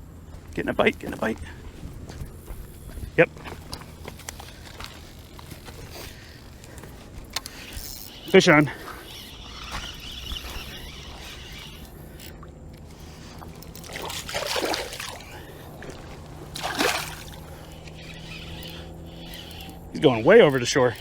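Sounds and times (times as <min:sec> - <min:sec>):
fish splashing at water surface: 0:13.2 - 0:18.2.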